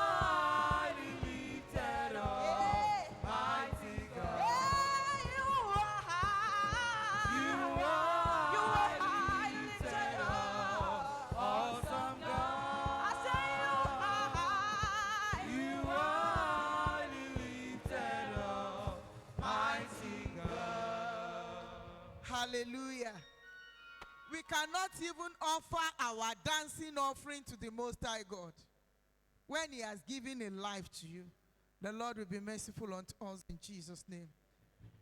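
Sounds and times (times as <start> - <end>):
percussion beat: 0.0 - 21.4
choir singing gospel song: 0.0 - 22.4.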